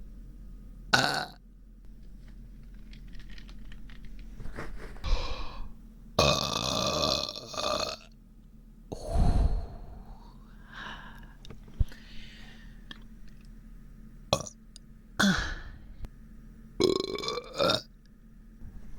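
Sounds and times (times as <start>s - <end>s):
person burping: 1.0s - 1.4s, 6.2s - 8.0s, 14.4s - 14.6s, 15.2s - 15.7s, 16.8s - 17.9s.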